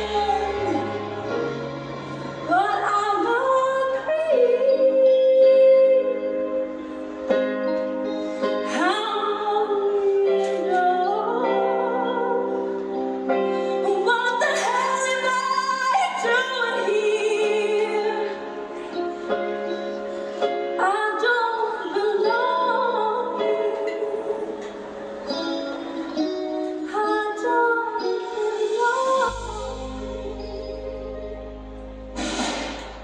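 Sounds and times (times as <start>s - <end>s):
instrumental accompaniment: 23.5s - 33.0s.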